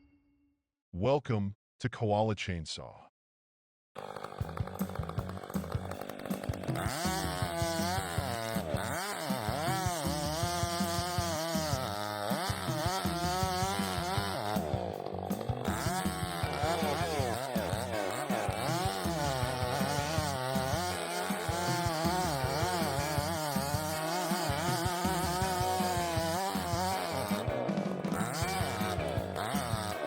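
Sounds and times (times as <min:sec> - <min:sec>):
chainsaw cutting wood: 0:04.0 - 0:30.0.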